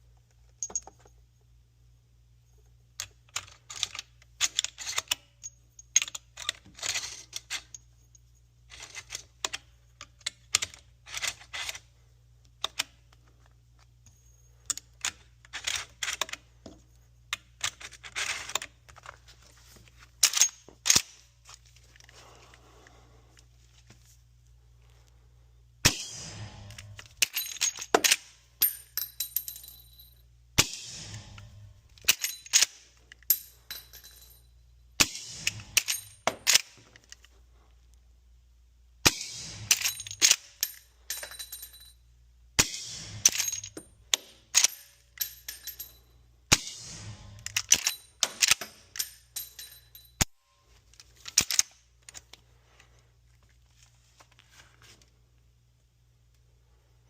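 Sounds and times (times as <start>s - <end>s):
rifle metallic clicks and clacks: 46.5s - 50.3s, 51.0s - 52.4s.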